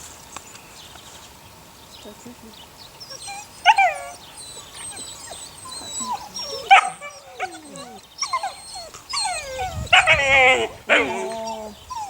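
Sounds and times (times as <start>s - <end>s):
puppies yelping and whimpering: 3.0s - 12.0s.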